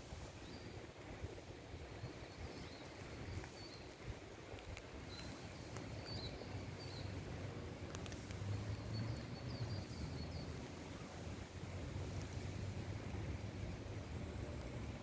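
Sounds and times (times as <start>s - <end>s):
small songbirds chirping: 0.0s - 15.0s.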